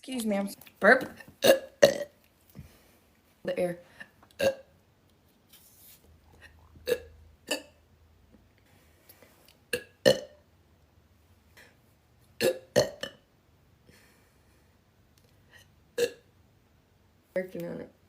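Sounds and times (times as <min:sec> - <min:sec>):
woman burping: 0:01.4 - 0:02.2, 0:04.4 - 0:04.7, 0:06.8 - 0:07.8, 0:09.7 - 0:10.4, 0:12.4 - 0:13.3, 0:16.0 - 0:16.3.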